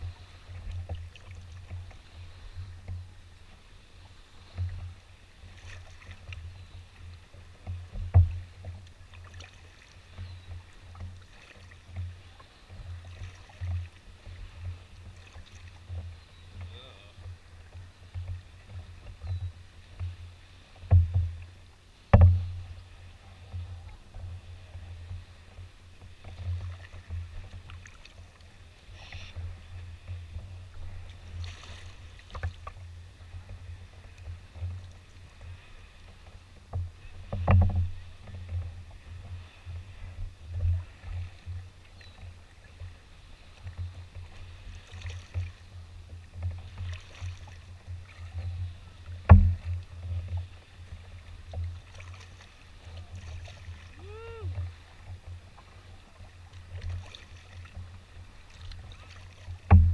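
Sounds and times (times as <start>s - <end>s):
paddle strokes: 0.0s - 59.9s
water sloshing: 0.0s - 59.9s
sharp knocks: 49.3s - 49.7s.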